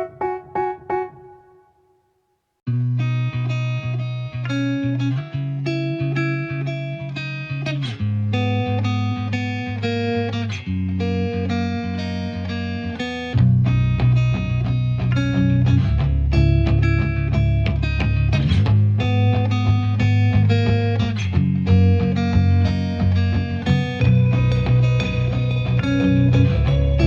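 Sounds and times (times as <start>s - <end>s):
guitar instrumental music: 0.0s - 1.8s, 2.7s - 27.0s
heavy bass layer: 21.7s - 27.0s.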